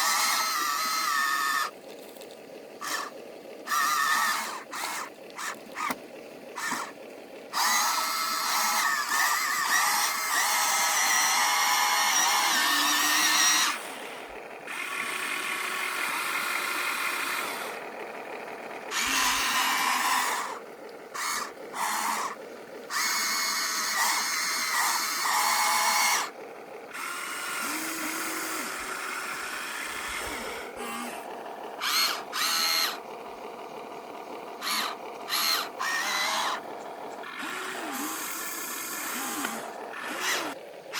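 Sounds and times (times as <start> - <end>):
toy truck electric motors whining: 0.0 - 40.9.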